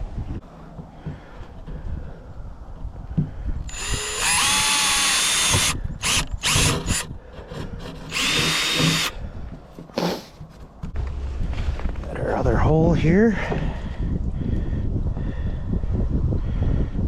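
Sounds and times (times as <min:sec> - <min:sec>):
power drill drilling: 0:03.7 - 0:07.1, 0:08.1 - 0:09.1.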